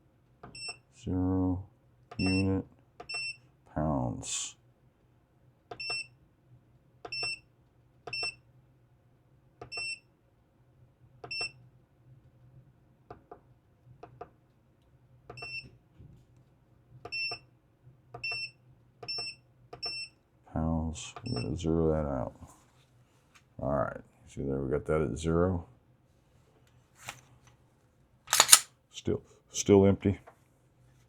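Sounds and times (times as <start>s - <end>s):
button clicks: 28.3s - 28.7s.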